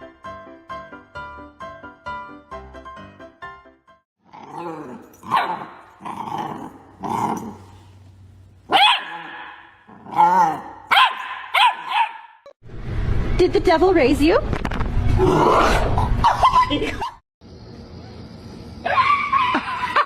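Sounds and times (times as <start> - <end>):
dog growly calls: 4.3 - 7.9
dog barking: 5.3 - 5.8, 8.7 - 12.4.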